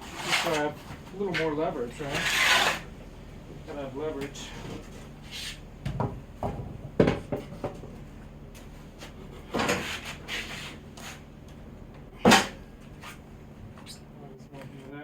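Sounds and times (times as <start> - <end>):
scraping rustle: 0.0 - 2.9, 8.9 - 11.3
wooden knocks: 5.8 - 8.0.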